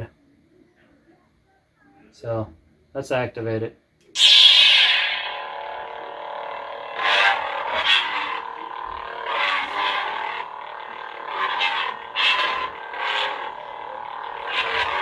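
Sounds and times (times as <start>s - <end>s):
lightsaber humming: 4.2s - 15.0s
lightsaber swing swooshes: 4.2s - 15.0s.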